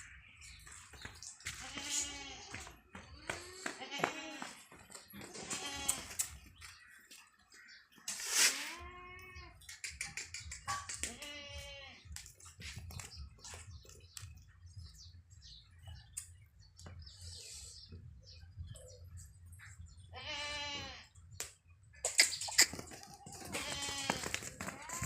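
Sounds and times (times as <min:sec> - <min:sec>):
goats bleating: 0:01.5 - 0:06.2, 0:11.1 - 0:12.1, 0:20.1 - 0:21.1, 0:23.3 - 0:25.0.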